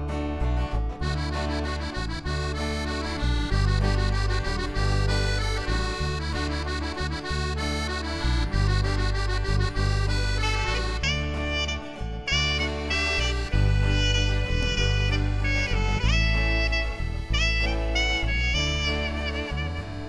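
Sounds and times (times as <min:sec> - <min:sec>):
instrumental music with bass line: 0:00.0 - 0:20.0.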